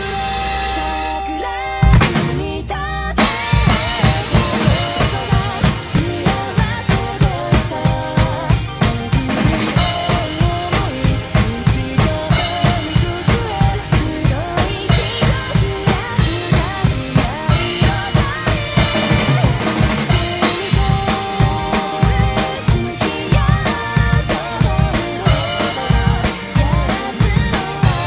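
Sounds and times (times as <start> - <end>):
drum kit playing: 0.0 - 28.0
rock backing track: 0.0 - 28.0.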